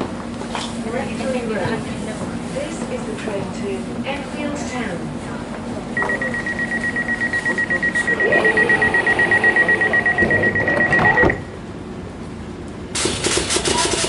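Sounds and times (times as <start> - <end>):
train door warning beeps: 6.0 - 11.6.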